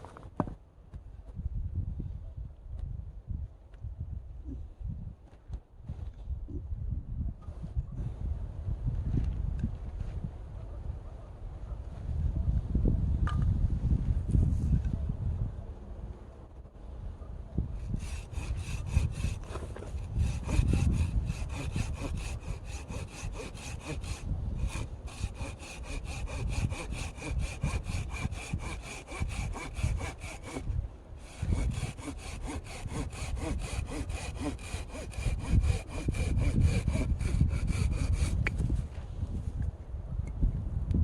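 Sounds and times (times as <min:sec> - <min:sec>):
hand saw cutting wood: 0:17.8 - 0:38.8.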